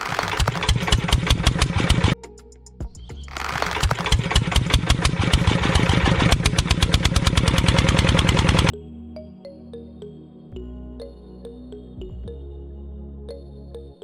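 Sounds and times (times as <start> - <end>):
small engine running: 0.0 - 2.2, 3.3 - 8.7
soft music: 2.2 - 3.4, 8.7 - 14.0.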